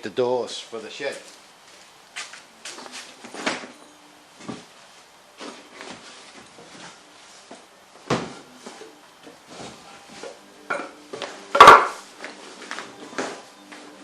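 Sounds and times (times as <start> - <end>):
hard objects knocking on a workbench: 11.5 - 12.0.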